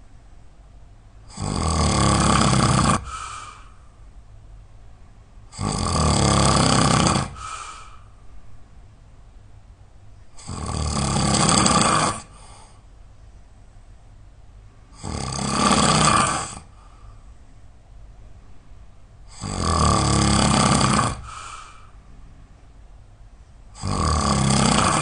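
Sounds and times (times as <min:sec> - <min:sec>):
person snoring loudly: 0:01.3 - 0:03.6, 0:05.5 - 0:07.9, 0:10.4 - 0:12.7, 0:14.9 - 0:16.8, 0:19.3 - 0:21.8, 0:23.8 - 0:25.0
soft breath: 0:03.0 - 0:04.1, 0:07.3 - 0:08.6, 0:12.3 - 0:13.5, 0:16.6 - 0:17.5, 0:21.2 - 0:22.4.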